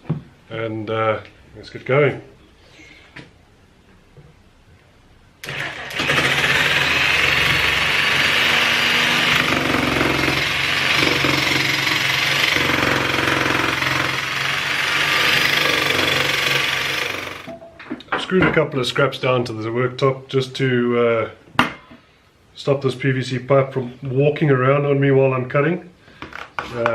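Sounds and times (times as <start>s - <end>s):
electric power tool cutting pipe: 5.4s - 17.5s.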